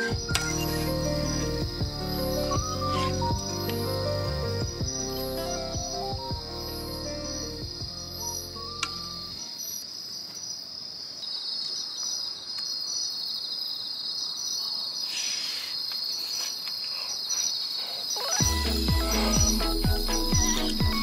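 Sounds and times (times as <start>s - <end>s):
crickets chirping: 0.0s - 21.0s.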